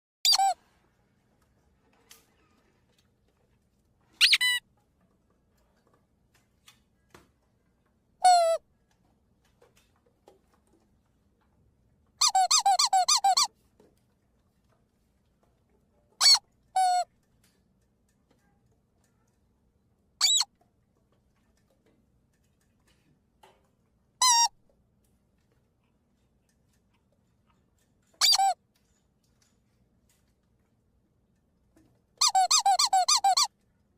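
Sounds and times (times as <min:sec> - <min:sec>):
squeaky toy squeaks: 0:00.2 - 0:00.6, 0:04.2 - 0:04.6, 0:08.2 - 0:08.6, 0:12.2 - 0:13.5, 0:16.2 - 0:17.1, 0:20.2 - 0:20.5, 0:24.2 - 0:24.6, 0:28.0 - 0:28.6, 0:32.2 - 0:33.5.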